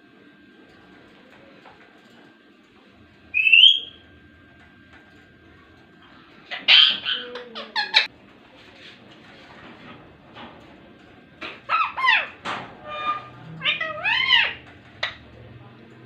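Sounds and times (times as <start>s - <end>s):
parrot calling: 3.3s - 4.0s, 6.4s - 8.1s, 11.4s - 15.3s
parrot chattering calls: 3.4s - 4.0s, 6.4s - 8.1s, 11.4s - 15.3s.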